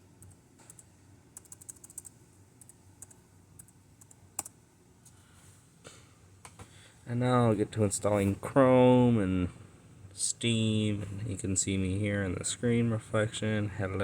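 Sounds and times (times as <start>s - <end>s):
computer keyboard keystrokes: 0.2s - 4.6s.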